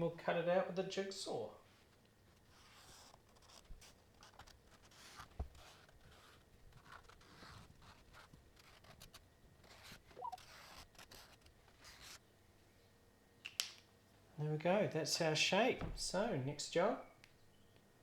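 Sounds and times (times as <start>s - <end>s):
marker scratching on plywood: 2.3s - 12.2s.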